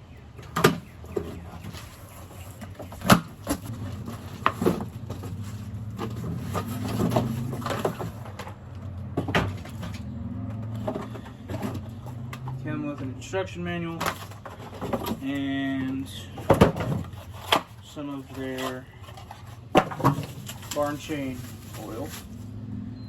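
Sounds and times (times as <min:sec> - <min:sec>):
packaging being handled: 0:16.0 - 0:22.4.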